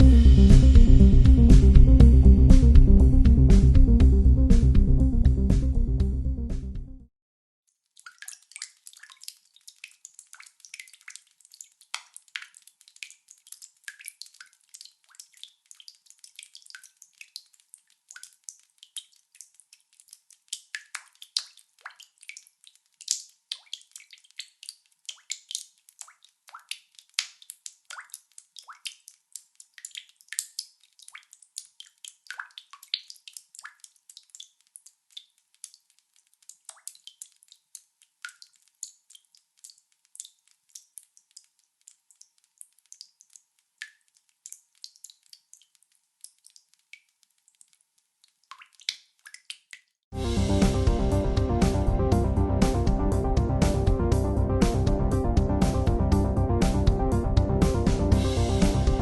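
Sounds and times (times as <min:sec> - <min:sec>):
water dripping fast: 0:07.9 - 0:55.0.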